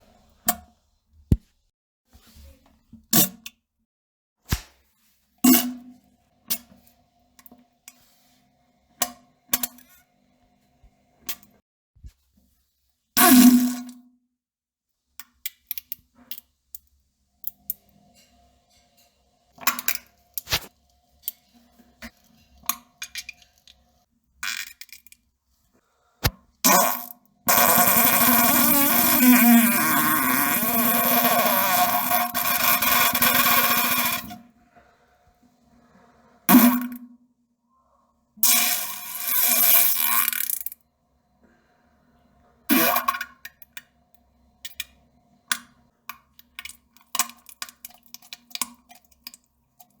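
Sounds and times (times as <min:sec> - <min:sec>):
pops and plops in toilet: 0:05.5 - 0:05.9, 0:36.5 - 0:37.1, 0:42.7 - 0:43.8, 0:45.5 - 0:50.0
fart: 0:26.7 - 0:34.3, 0:42.7 - 0:43.2.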